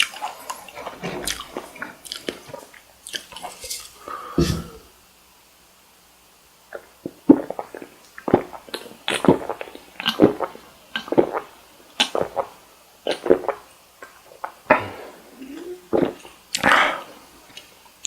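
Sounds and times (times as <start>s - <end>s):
close chewing mouth sounds: 0.0s - 3.9s.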